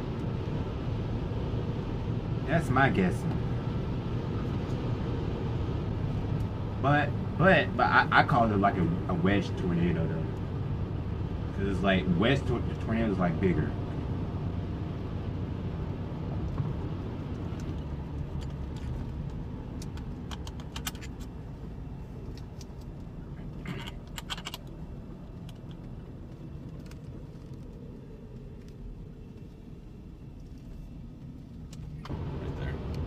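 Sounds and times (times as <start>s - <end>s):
car road noise rumble: 0.0s - 33.0s
clicks and rattles: 17.6s - 21.3s, 23.6s - 24.7s.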